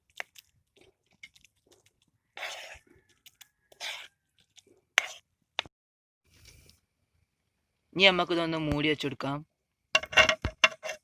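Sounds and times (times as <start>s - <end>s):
spatula scraping noodles in pan: 2.3s - 5.3s, 10.0s - 11.0s.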